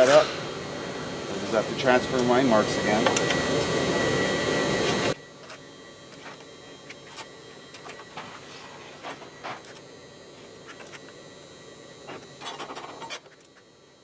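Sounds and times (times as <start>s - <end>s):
shop machine noise: 0.0s - 14.0s.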